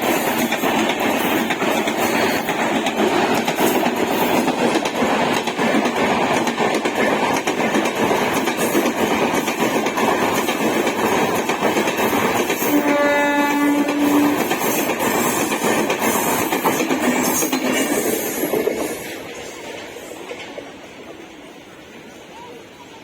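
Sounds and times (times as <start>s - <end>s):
train wheels rolling on rails: 0.0s - 23.0s
train horn: 12.6s - 14.8s.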